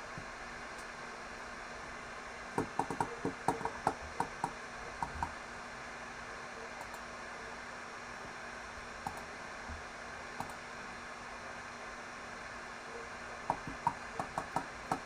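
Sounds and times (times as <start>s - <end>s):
steady hiss: 0.0s - 15.0s
computer keyboard clicks: 2.6s - 5.3s, 13.5s - 15.0s.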